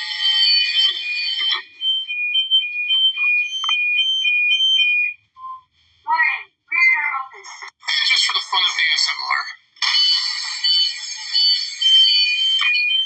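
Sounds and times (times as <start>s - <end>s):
alarm alternating two high tones: 0.0s - 5.2s, 9.8s - 13.0s
shrill electronic door alarms: 0.0s - 5.2s, 9.8s - 13.0s.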